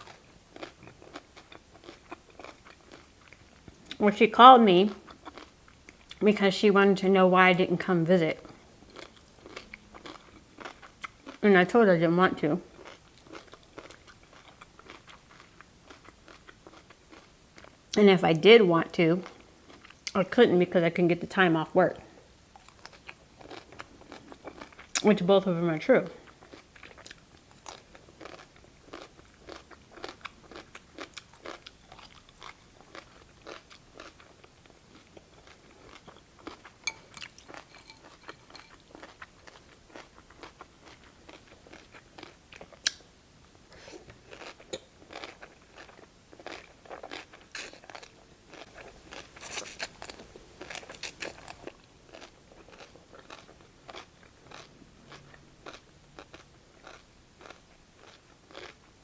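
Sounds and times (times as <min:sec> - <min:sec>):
crunching cucumber slices: 0:44.3 - 0:58.8.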